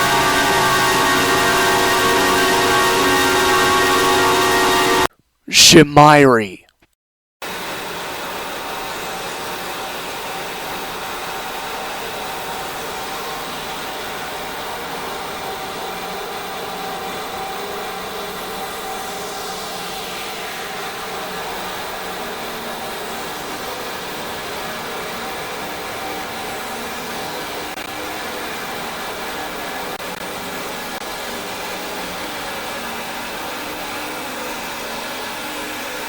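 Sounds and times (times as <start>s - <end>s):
hissing humming drone: 0.0s - 5.0s.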